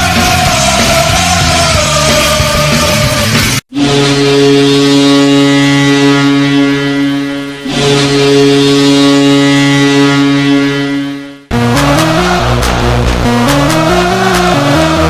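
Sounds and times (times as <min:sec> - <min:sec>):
goal horn blasts: 0:03.7 - 0:14.9.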